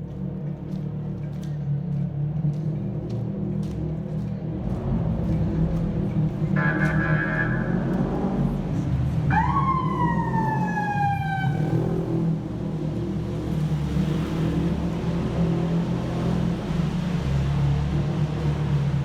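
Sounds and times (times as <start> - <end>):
steady low rumble: 3.9 - 13.2.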